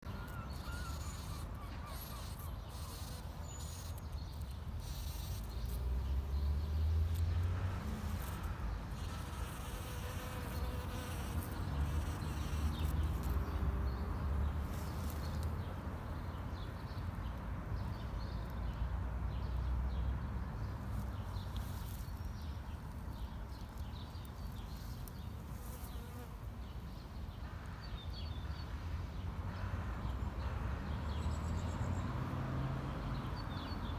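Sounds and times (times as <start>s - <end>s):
bumblebee buzzing: 0.1s - 15.5s, 24.7s - 26.3s.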